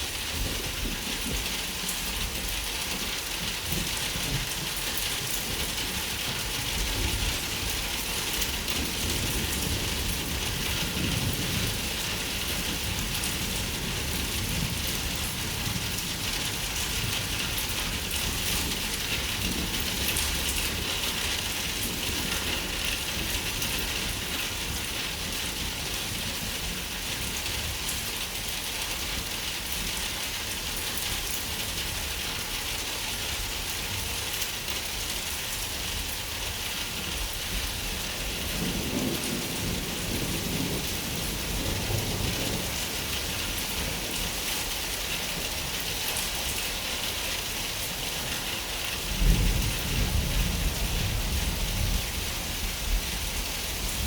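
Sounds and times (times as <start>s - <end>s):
steady rain falling: 0.0s - 54.0s
low thunder rumbling: 37.6s - 44.1s, 49.0s - 54.0s.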